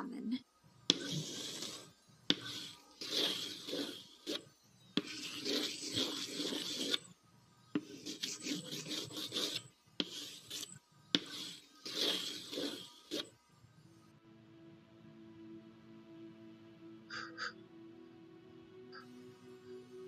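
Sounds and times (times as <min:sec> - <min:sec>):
marker scratching on surface: 0:00.9 - 0:13.4.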